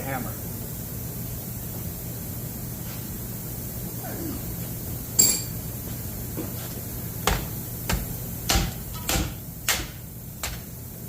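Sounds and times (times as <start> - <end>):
hammer striking metal: 5.2 - 5.6.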